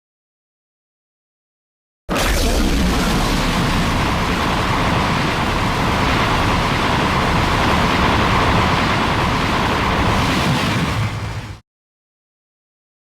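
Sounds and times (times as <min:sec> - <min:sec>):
loud steady rushing noise: 0:02.1 - 0:11.6.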